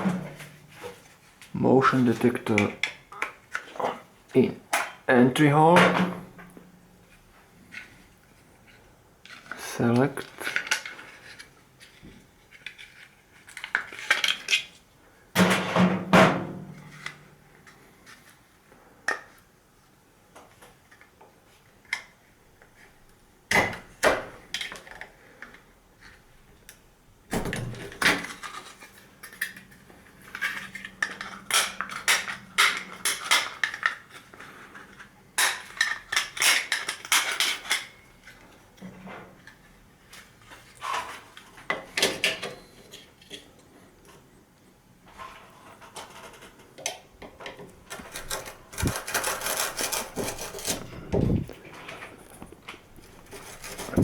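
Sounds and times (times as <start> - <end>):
plastic parts clicking and clattering: 9.2 - 14.8, 27.4 - 38.5, 45.1 - 51.0.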